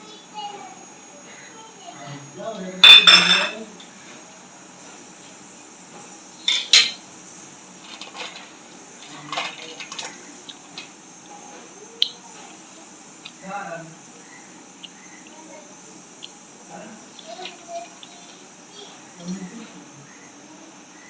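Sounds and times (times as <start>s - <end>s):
metal utensils clinking on dishes: 2.8s - 3.6s.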